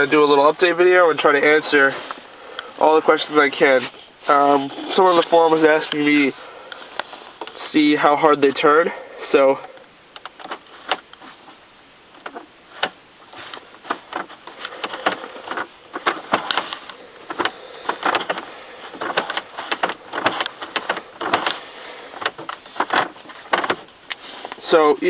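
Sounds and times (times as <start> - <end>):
plastic knobs clicking: 10.1 - 11.3, 12.1 - 24.8.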